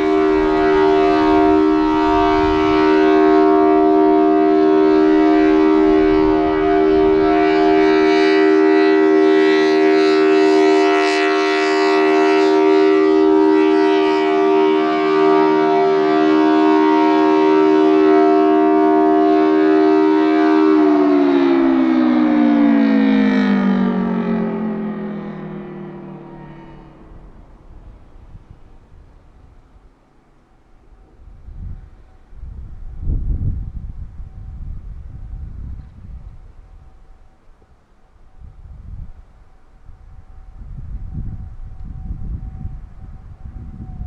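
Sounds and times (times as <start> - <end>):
tornado siren two-note chord: 0.0 - 32.7, 39.9 - 44.0
low rumble: 23.5 - 29.8.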